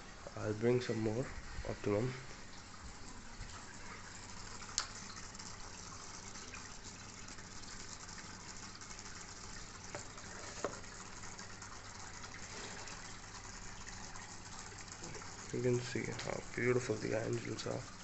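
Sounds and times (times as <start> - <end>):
water rushing from aquarium filter: 0.0 - 18.0.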